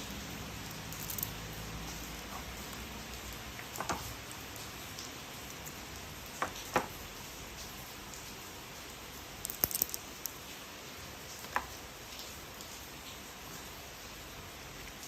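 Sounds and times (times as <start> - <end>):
plastic toy parts clicking: 0.9 - 1.3, 9.4 - 10.4.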